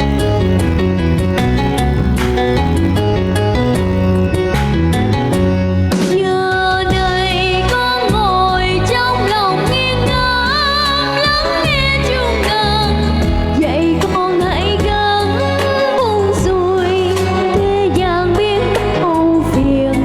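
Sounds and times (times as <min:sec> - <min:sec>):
instrumental backing track: 0:00.0 - 0:20.0
girl singing with vibrato: 0:06.1 - 0:20.0.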